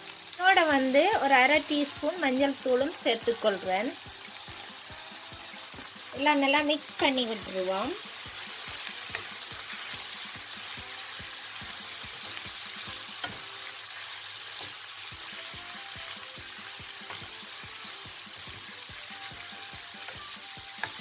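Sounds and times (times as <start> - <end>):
food sizzling in hot oil: 0.0 - 21.0
spoon knocking and scraping pan: 8.2 - 13.8, 20.0 - 21.0.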